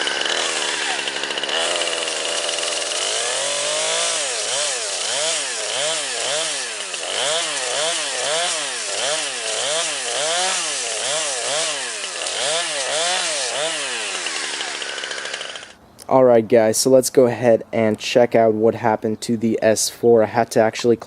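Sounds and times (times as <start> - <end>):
chainsaw chain rasping: 0.0 - 15.8
chainsaw engine revving: 0.0 - 15.8.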